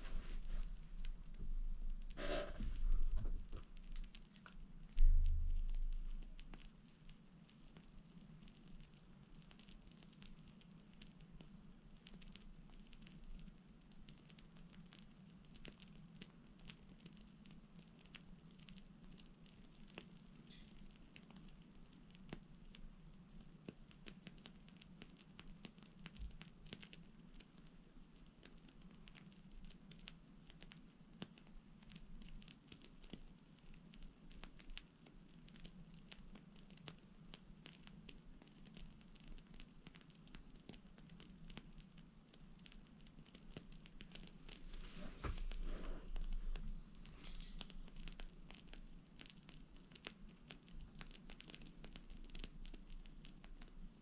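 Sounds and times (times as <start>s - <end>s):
steady low hum: 0.0s - 6.8s
candle crackling and popping: 0.0s - 54.0s.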